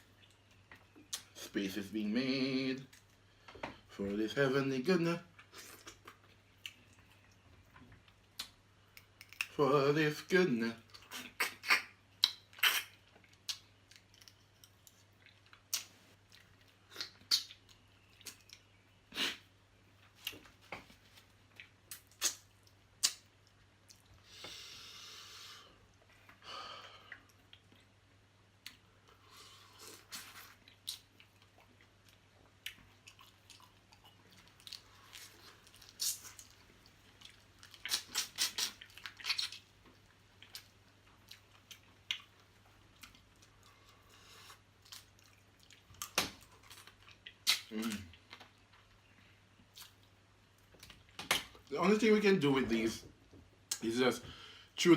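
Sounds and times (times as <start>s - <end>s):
crunchy chewing of crabs: 28.6s - 50.2s.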